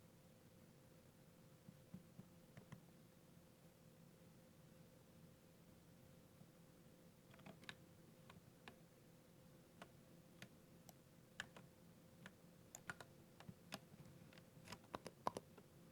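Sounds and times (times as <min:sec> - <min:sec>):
mechanical keyboard clicks: 0:11.4 - 0:11.7, 0:12.7 - 0:13.9.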